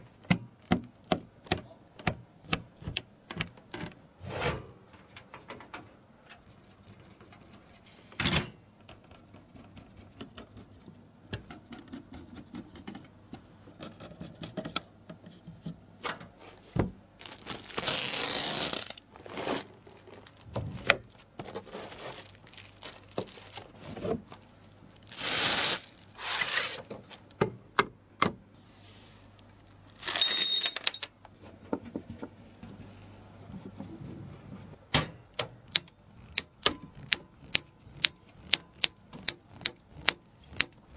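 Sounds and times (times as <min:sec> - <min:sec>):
rustling bursts: 0:25.0 - 0:26.9.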